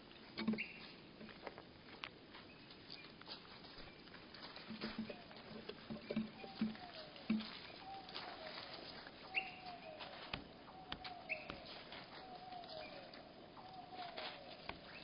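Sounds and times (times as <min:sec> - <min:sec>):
slowed bird calls: 0:05.1 - 0:15.0.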